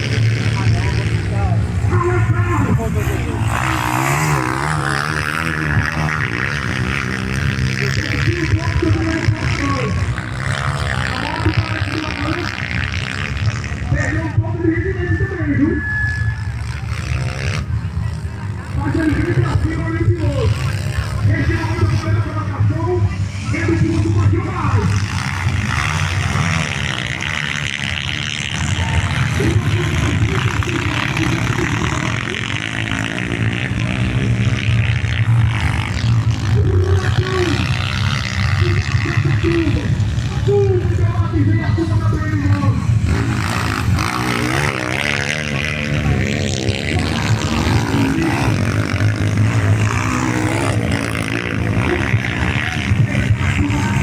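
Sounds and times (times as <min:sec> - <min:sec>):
motorcycle engines revving: 0:00.0 - 0:54.0.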